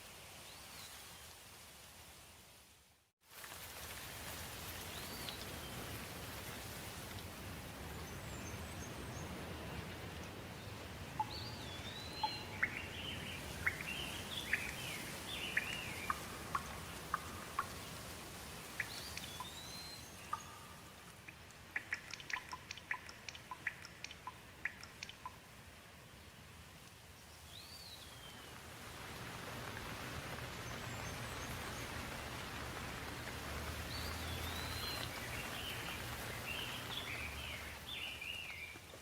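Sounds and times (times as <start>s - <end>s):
steady rain: 0.0s - 39.0s
water drips ticking: 11.1s - 25.8s, 29.1s - 39.0s.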